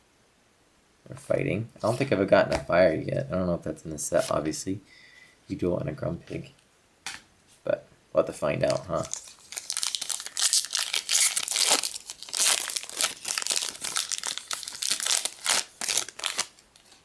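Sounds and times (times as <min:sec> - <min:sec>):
foil wrapper crinkling and tearing: 0:08.7 - 0:17.0.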